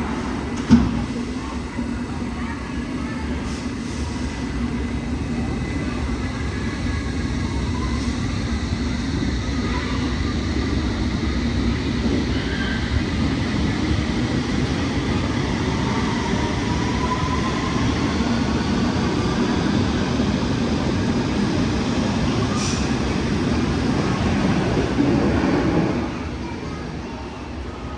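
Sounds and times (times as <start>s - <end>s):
train running on rails: 0.0s - 27.9s.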